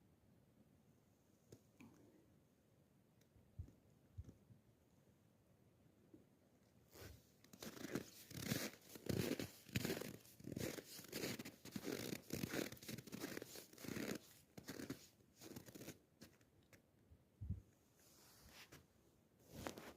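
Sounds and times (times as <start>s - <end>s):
footsteps crunching in snow: 7.5s - 16.0s.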